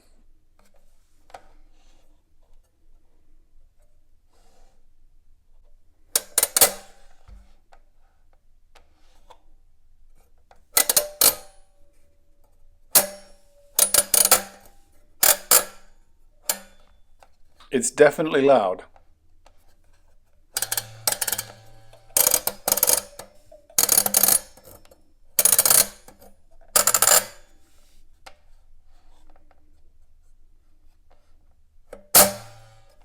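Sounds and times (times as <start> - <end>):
adding machine metallic clacks: 20.6 - 24.3.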